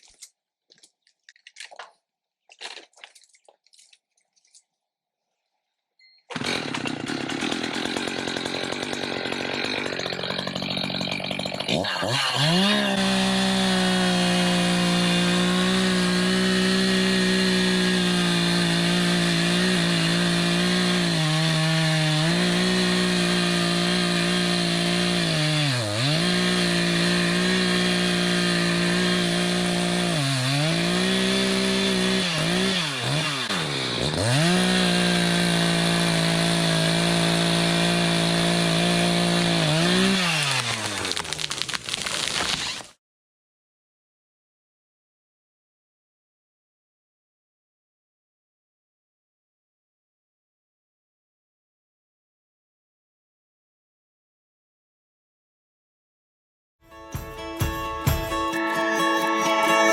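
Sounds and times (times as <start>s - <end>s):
chainsaw cutting tree trunk: 6.3s - 43.0s.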